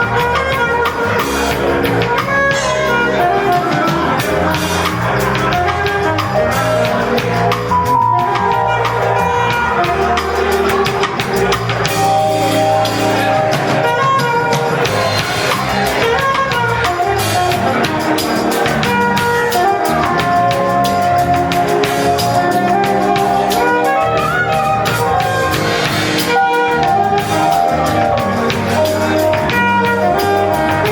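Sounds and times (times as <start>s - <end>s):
live band playing: 0.0s - 30.9s.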